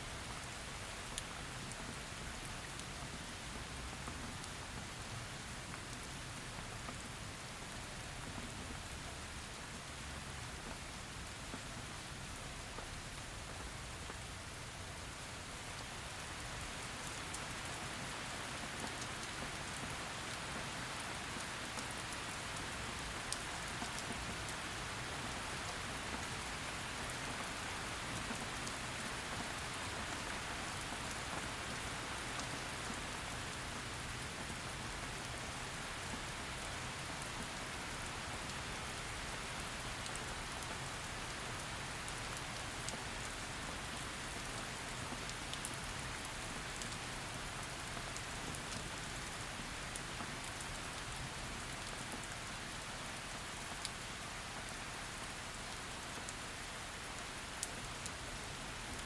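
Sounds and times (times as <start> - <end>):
heavy rain hiss: 0.0 - 59.0
raindrops ticking on a surface: 0.1 - 59.0.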